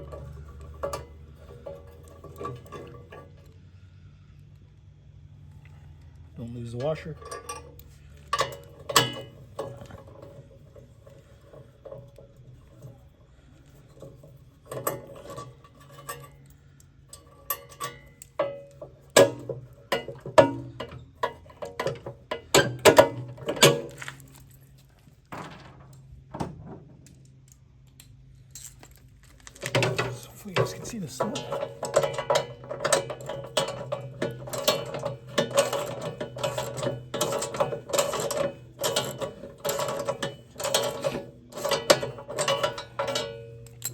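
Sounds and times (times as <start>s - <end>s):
metal tools and bolts clinking: 0.0s - 3.6s, 6.4s - 24.7s, 28.0s - 43.9s.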